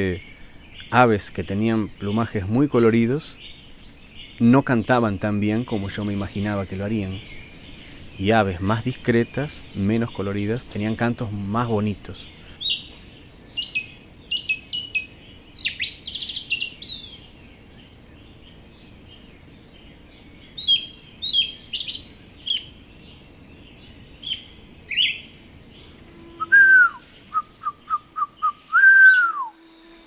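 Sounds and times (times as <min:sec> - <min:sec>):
birds chirping and trilling: 0:00.0 - 0:30.0
insect drone: 0:05.6 - 0:12.6, 0:25.8 - 0:30.0
falling whistled call: 0:26.3 - 0:30.0
short whistled notes: 0:26.4 - 0:29.6.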